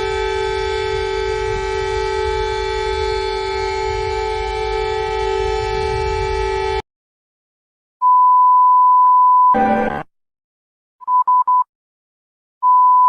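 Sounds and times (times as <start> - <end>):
low many-toned alarm: 0.0 - 6.8
short buzz: 9.6 - 10.1.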